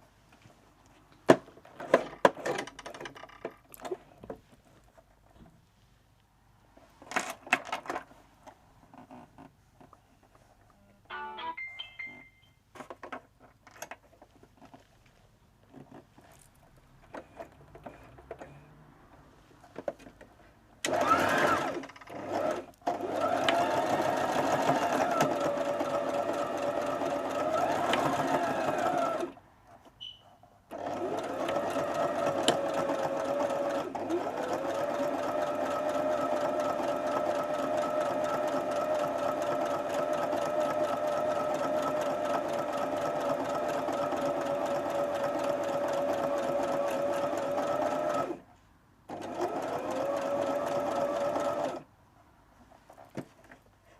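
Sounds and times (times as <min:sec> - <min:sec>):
electric sewing machine stitching: 0:20.8 - 0:29.4, 0:30.7 - 0:48.4, 0:49.1 - 0:51.9.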